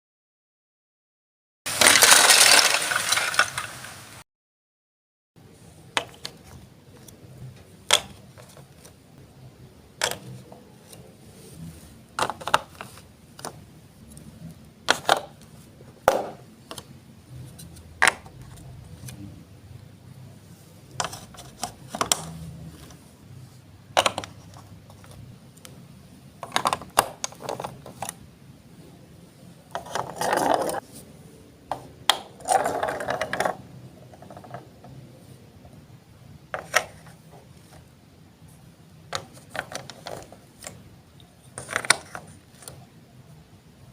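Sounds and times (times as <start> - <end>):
plastic bricks clattering: 1.7 - 3.9, 12.2 - 13.6, 23.9 - 25.2, 26.4 - 28.1, 29.7 - 30.8, 31.7 - 34.8, 41.4 - 42.7
plastic bricks clicking: 1.8 - 3.7, 12.2 - 13.6, 23.9 - 25.2, 26.4 - 28.2, 31.7 - 33.6, 41.5 - 42.8.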